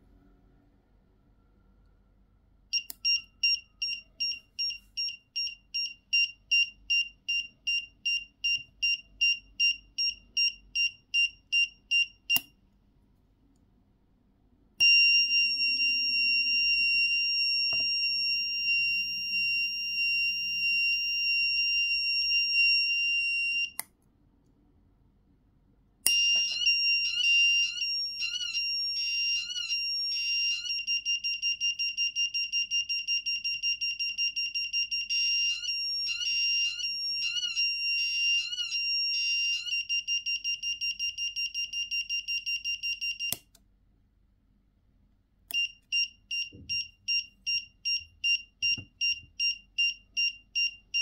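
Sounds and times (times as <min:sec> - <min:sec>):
buzzer switch click: 0:12.3 - 0:12.5, 0:43.1 - 0:43.6
electronic buzzer alarm tone: 0:14.8 - 0:23.8, 0:26.1 - 0:43.4, 0:45.5 - 0:51.0.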